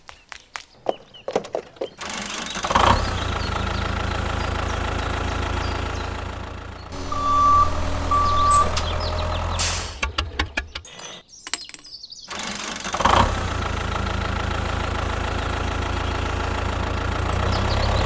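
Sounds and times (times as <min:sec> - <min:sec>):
heavy vehicle engine running: 0:02.0 - 0:10.9, 0:12.8 - 0:18.0
reversing alarm beeps: 0:07.0 - 0:10.0.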